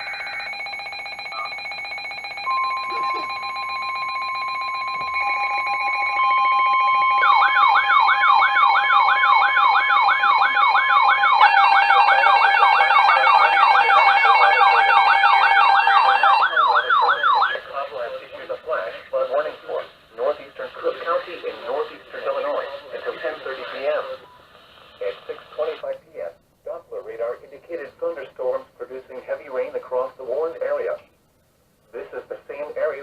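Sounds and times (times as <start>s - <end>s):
steady electronic alarm tones: 0.0s - 19.7s
fast-wailing siren sweep: 2.7s - 17.6s.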